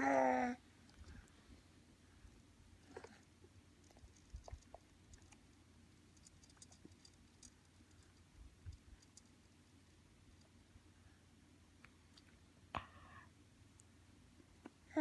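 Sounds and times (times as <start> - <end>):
low room hum: 0.0 - 15.0
small clicks and ticks: 0.8 - 1.4, 2.3 - 10.6.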